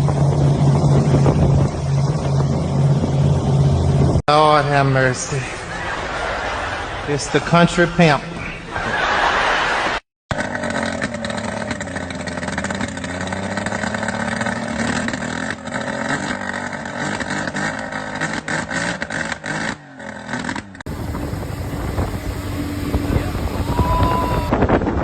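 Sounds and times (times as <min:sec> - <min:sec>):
windy engine sound: 0:00.0 - 0:04.2, 0:20.9 - 0:25.0
motor engine running: 0:20.9 - 0:24.6.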